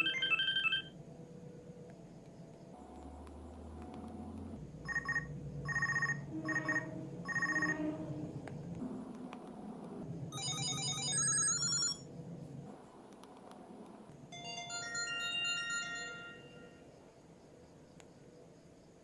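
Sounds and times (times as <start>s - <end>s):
chiming ringtone melody: 0.0s - 0.9s, 10.4s - 12.0s, 14.4s - 16.8s
electronic beeping ringtone: 0.0s - 0.9s, 4.9s - 7.8s, 10.4s - 12.0s, 14.4s - 16.8s.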